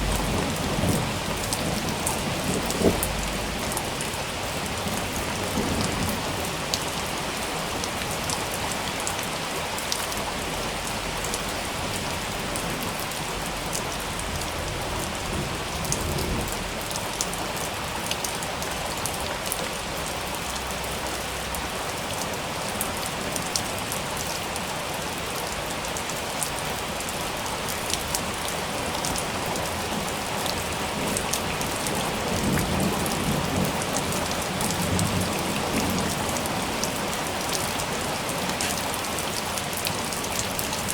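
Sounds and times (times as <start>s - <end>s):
low thunder rumbles: 0.0s - 7.3s
heavy rain on hard surface: 0.0s - 40.9s.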